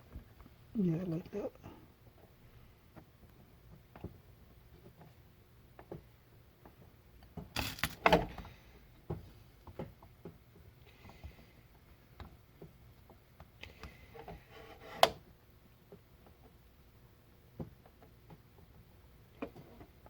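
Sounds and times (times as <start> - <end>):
clatter of parts: 7.5 - 8.4.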